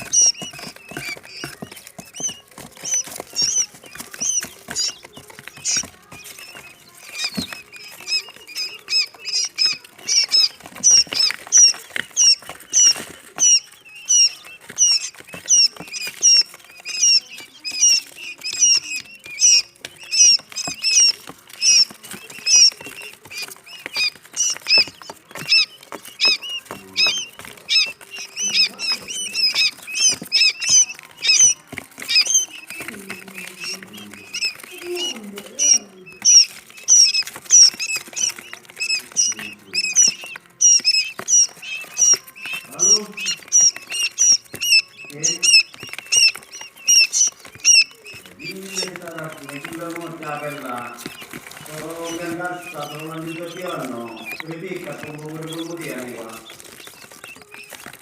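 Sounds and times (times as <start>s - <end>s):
chicks peeping: 0.0s - 58.0s.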